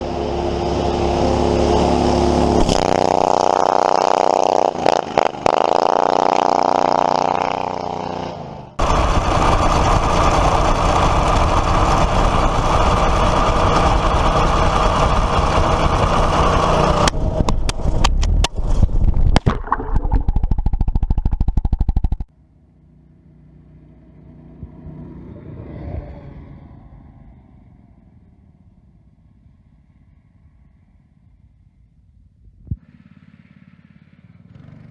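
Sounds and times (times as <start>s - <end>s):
small gas engine revving: 0.0s - 18.8s, 32.8s - 34.9s.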